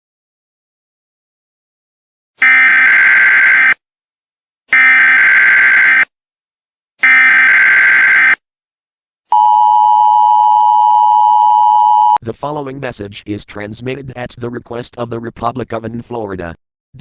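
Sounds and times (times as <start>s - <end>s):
two-tone attention signal: 9.3s - 12.2s.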